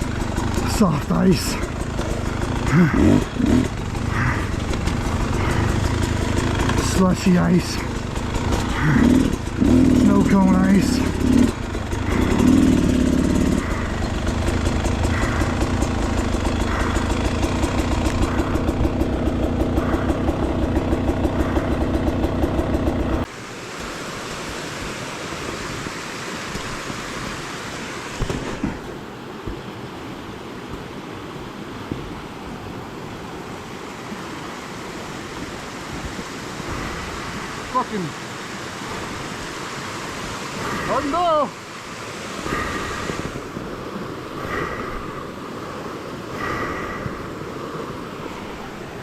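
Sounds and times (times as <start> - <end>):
motorcycle engine idling: 0.0 - 23.3
creek water rushing: 0.0 - 49.0.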